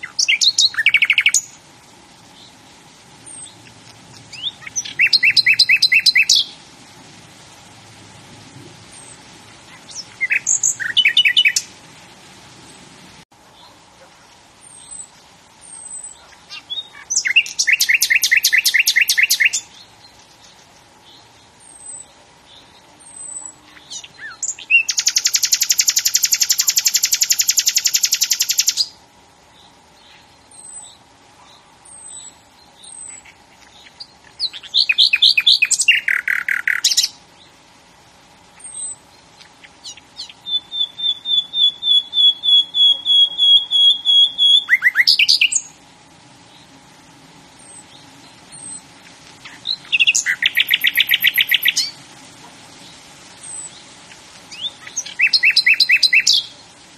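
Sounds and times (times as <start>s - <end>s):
bird trilling song: 0.0s - 1.6s, 3.2s - 6.6s, 8.9s - 11.7s, 14.6s - 29.0s, 29.6s - 37.2s, 38.6s - 45.8s, 47.6s - 52.0s, 52.8s - 56.6s
faint steady hum: 0.0s - 56.9s.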